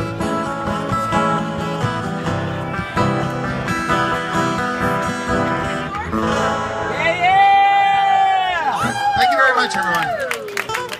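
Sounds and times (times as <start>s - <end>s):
acoustic guitar strumming chords: 0.0s - 7.3s.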